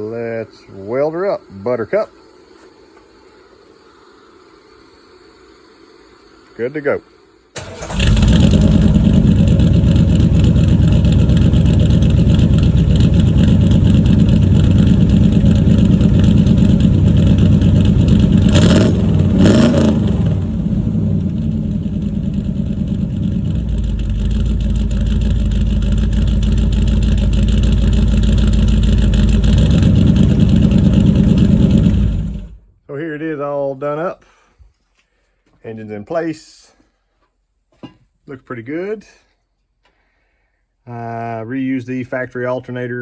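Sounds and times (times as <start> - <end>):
engine idling loudly: 7.6 - 32.6
engine throttle revs: 7.6 - 32.6.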